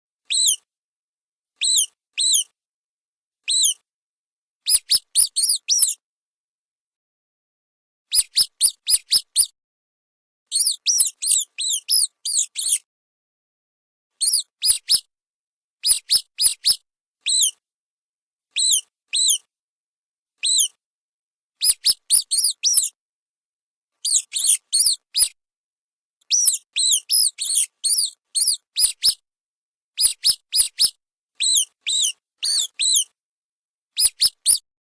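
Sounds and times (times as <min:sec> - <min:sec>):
rodent squeaking: 0:00.3 - 0:00.6, 0:01.6 - 0:02.5, 0:03.5 - 0:03.8, 0:04.7 - 0:06.0, 0:08.1 - 0:09.6, 0:10.5 - 0:12.9, 0:14.2 - 0:15.1, 0:15.8 - 0:17.6, 0:18.6 - 0:19.5, 0:20.4 - 0:20.8, 0:21.6 - 0:23.0, 0:24.0 - 0:25.4, 0:26.2 - 0:29.2, 0:30.0 - 0:33.2, 0:34.0 - 0:34.6.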